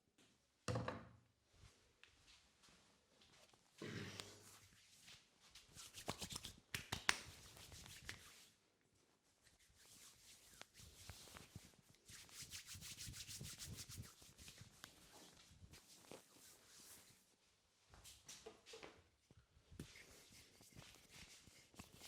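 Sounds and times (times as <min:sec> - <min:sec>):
hands rubbing and patting hair: 0:04.4 - 0:18.8, 0:19.8 - 0:22.0.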